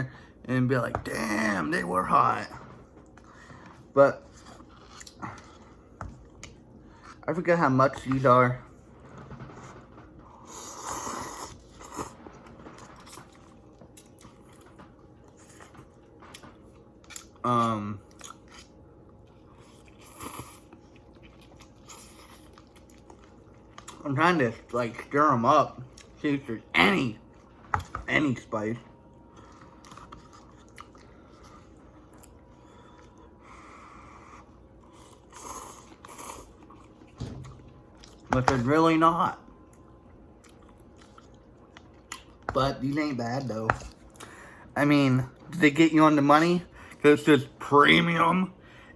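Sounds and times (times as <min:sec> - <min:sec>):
person chewing noodles: 0:03.0 - 0:07.2, 0:10.3 - 0:24.0, 0:29.2 - 0:38.3, 0:39.6 - 0:42.5.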